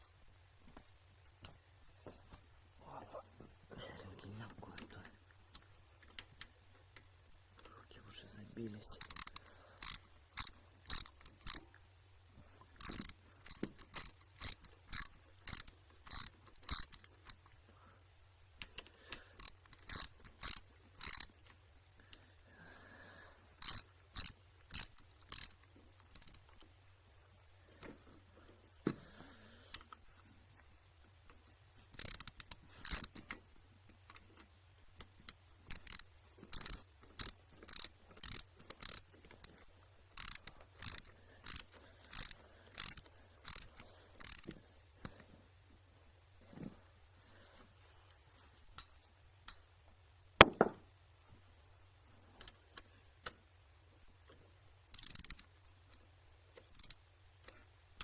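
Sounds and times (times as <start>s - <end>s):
ratchet wrench clicking: 8.6s - 11.9s, 12.6s - 17.5s, 18.6s - 22.3s, 23.2s - 26.8s, 31.3s - 45.3s, 54.3s - 57.7s.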